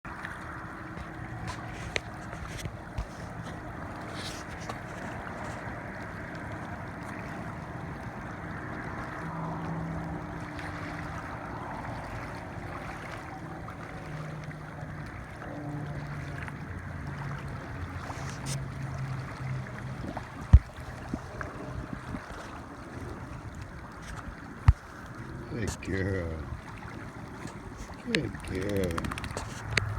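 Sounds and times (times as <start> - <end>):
wind: 0.0 - 29.9
water noise: 0.1 - 29.9
small clicks: 28.5 - 29.9.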